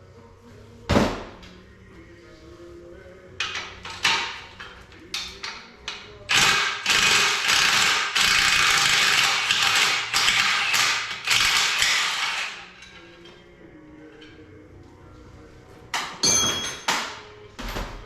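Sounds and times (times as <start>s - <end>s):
handheld power tool running: 6.3s - 12.7s.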